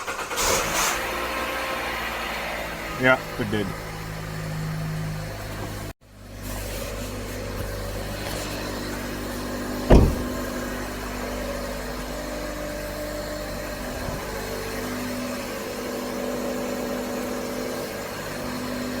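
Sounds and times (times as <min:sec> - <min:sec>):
loud thump: 0:09.9 - 0:10.6
car engine idling: 0:09.9 - 0:10.8.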